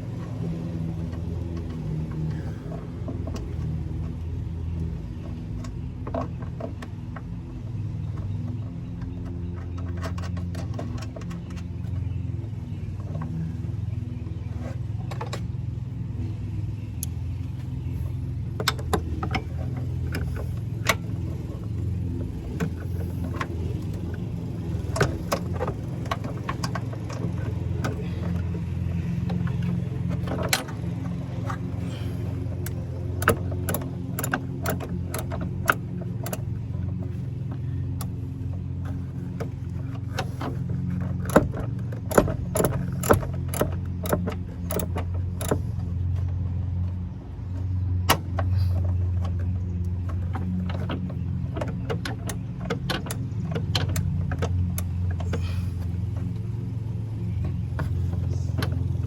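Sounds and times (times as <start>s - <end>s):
low engine hum: 0.0s - 59.0s
metal tools clicking and clinking: 24.8s - 36.7s, 41.0s - 45.7s.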